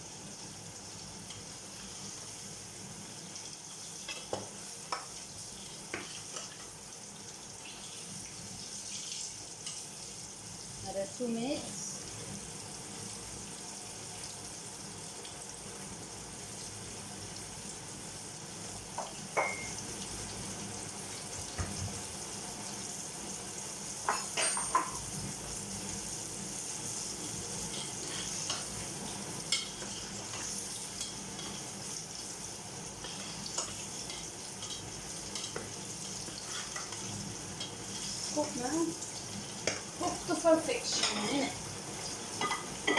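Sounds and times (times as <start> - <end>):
food sizzling in a frying pan: 0.0 - 42.9
utensil clinking against pan: 24.1 - 25.0.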